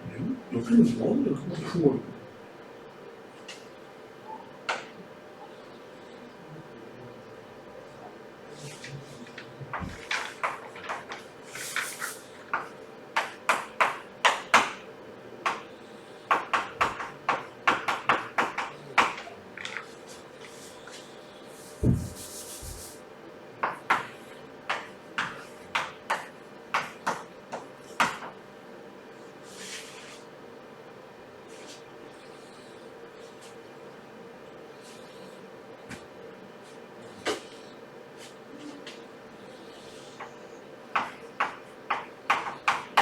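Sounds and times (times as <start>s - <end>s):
writing on a board: 8.6s - 14.8s, 15.4s - 23.0s, 23.6s - 28.4s, 36.6s - 43.0s.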